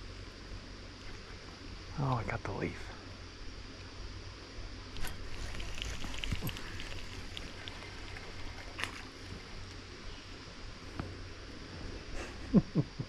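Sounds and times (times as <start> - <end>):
creek water rushing: 4.9 - 12.1.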